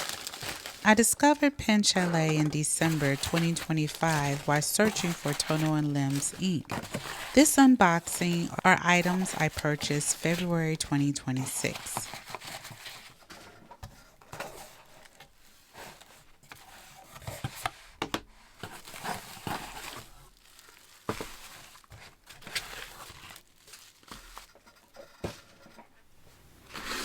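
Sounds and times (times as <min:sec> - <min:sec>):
packaging crinkling and rustling: 0:00.0 - 0:10.5, 0:11.6 - 0:13.8, 0:18.6 - 0:25.0, 0:26.6 - 0:27.0.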